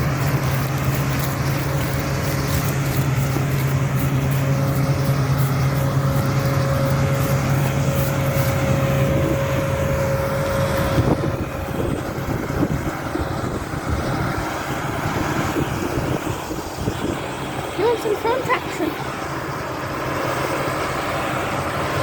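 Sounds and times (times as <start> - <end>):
rough rustling: 0.0 - 11.9
combine harvester engine drone: 0.0 - 22.0.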